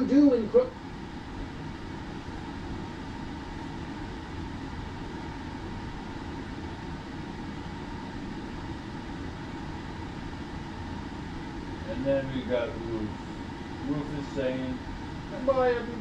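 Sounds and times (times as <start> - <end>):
background hum and hiss: 0.0 - 16.0.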